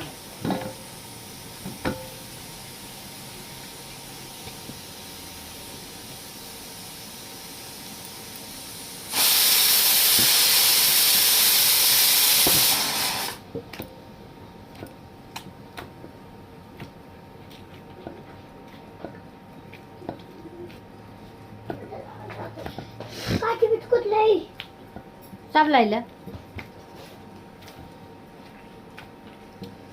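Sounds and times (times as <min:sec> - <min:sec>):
pressure cooker steam hiss: 0:00.0 - 0:13.5.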